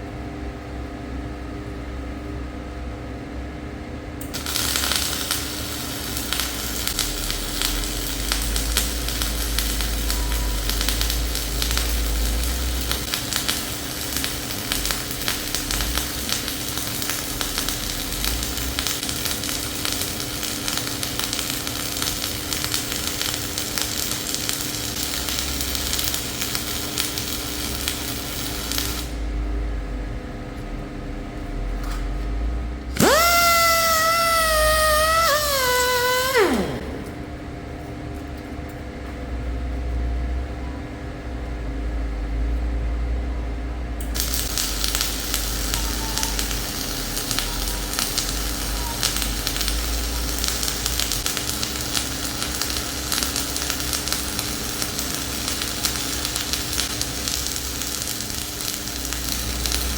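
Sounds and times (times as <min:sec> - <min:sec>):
welding arc crackling: 0:04.3 - 0:29.2, 0:32.9 - 0:37.4, 0:44.1 - 0:59.9
steady hum: 0:32.9 - 0:37.7.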